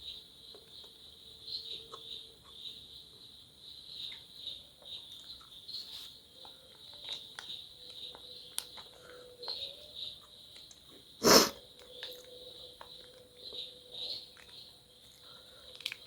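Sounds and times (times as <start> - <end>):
person chewing close up: 4.9 - 5.6, 6.7 - 11.0, 11.6 - 16.0.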